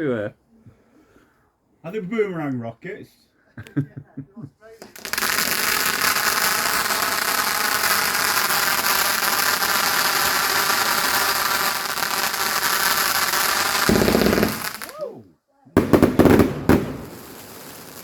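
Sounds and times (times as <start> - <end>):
firework burst: 4.8 - 15.0, 15.8 - 18.0
firework hissing: 4.8 - 15.0, 15.8 - 18.0.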